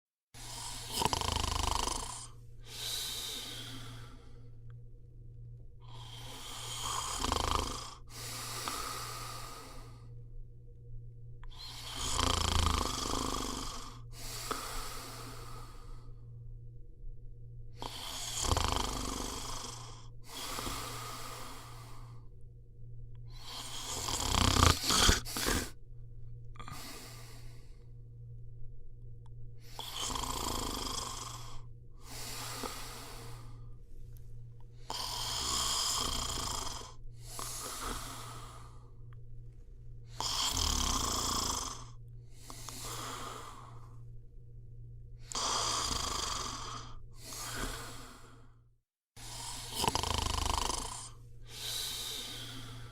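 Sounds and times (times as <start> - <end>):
breathy exhale: 0.4 - 4.7, 8.0 - 10.1, 14.1 - 16.4, 17.8 - 22.3, 23.3 - 25.8, 26.6 - 27.9, 31.5 - 33.9, 34.8 - 39.0, 40.1 - 44.0, 45.2 - 48.6, 49.2 - 52.9
person snoring: 0.4 - 4.7, 5.8 - 10.2, 11.4 - 16.3, 17.7 - 22.3, 23.3 - 25.8, 26.6 - 27.8, 29.6 - 33.8, 34.8 - 39.1, 40.0 - 44.0, 45.2 - 48.6, 49.2 - 52.9.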